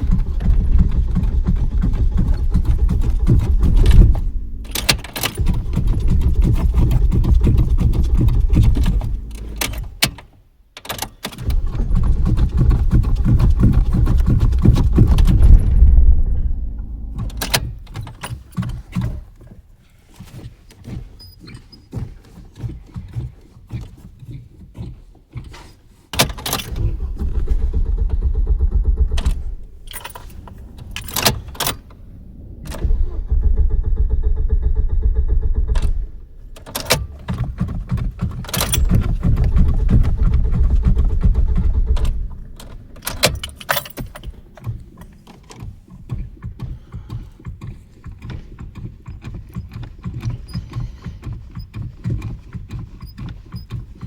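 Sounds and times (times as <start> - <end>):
car engine cranking: 0.0 - 22.2, 26.2 - 54.0
keys jangling in ignition: 29.2 - 31.9, 36.6 - 40.5, 41.9 - 44.8.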